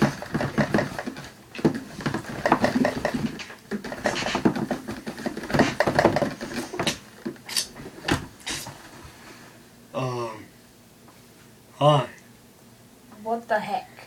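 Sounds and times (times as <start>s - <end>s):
person making vocal noises: 9.9s - 10.5s.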